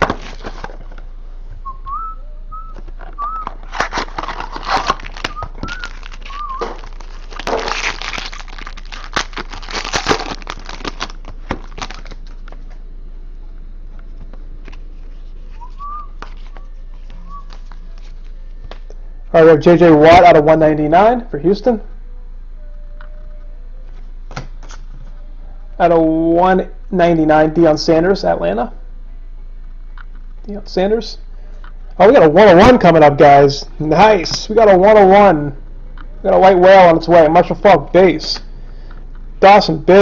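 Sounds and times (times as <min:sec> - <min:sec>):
person whistling: 0:01.6 - 0:03.6, 0:05.3 - 0:06.8, 0:15.6 - 0:17.5
packaging crackling and rustling: 0:03.2 - 0:12.8.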